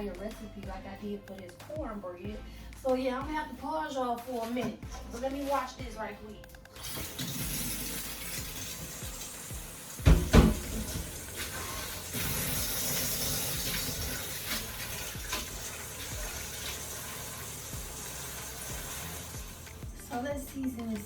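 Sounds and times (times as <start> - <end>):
tap running into a sink: 6.8 - 19.8.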